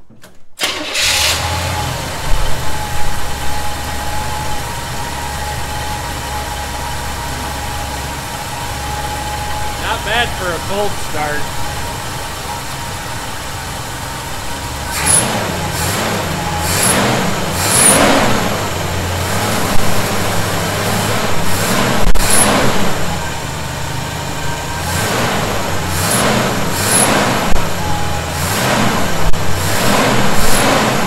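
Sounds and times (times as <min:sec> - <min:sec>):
pickup engine running: 0:00.6 - 0:31.0.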